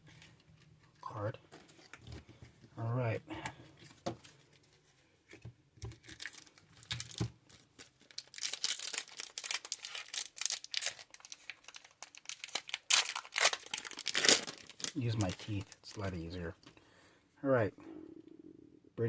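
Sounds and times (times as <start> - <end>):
wrapper crinkling and tearing: 5.9 - 16.3.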